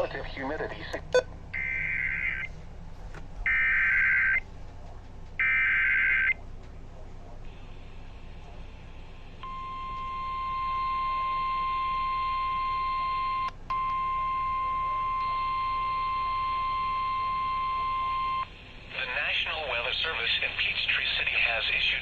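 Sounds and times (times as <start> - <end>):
steady warning alarm tone: 1.0 - 2.6, 3.4 - 4.4, 5.4 - 6.4, 9.4 - 18.7.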